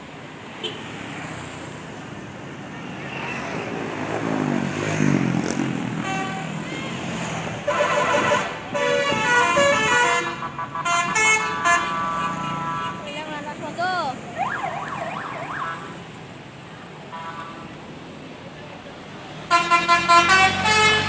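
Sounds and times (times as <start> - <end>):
bus musical air horn: 7.6 - 13.0, 19.5 - 21.0.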